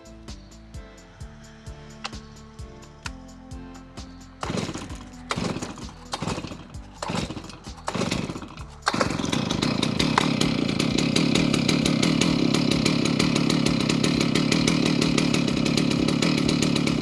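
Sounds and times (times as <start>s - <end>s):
two-stroke chainsaw engine running: 0.0s - 17.0s
short engine bursts: 4.4s - 17.0s.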